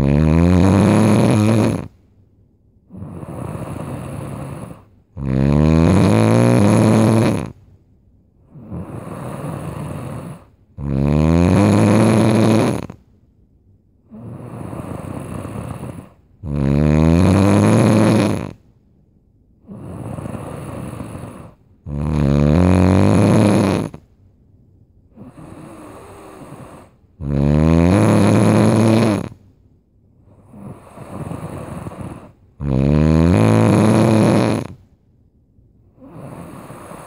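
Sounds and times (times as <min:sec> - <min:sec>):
breathy snores: 0:00.0 - 0:02.0, 0:02.9 - 0:07.6, 0:08.4 - 0:13.0, 0:14.0 - 0:18.7, 0:19.6 - 0:24.1, 0:25.1 - 0:29.5, 0:30.2 - 0:34.9, 0:35.9 - 0:37.0
person snoring loudly: 0:00.0 - 0:02.0, 0:02.9 - 0:07.6, 0:08.5 - 0:13.0, 0:14.1 - 0:18.6, 0:19.6 - 0:24.0, 0:25.2 - 0:29.4, 0:30.4 - 0:34.8, 0:36.0 - 0:37.0.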